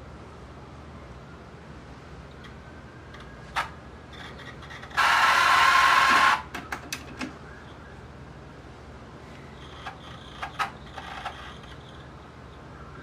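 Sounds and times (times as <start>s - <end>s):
cassette tape rushing whir: 2.3s - 7.9s
tape mechanism clicks: 2.4s - 7.4s.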